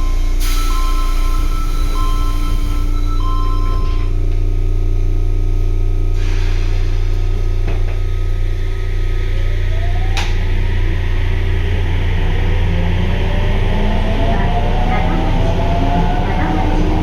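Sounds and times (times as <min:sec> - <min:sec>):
train doors closing: 0:00.0 - 0:04.1, 0:06.2 - 0:08.6
train low hum: 0:00.0 - 0:17.0
train motor rising whine: 0:06.2 - 0:17.0.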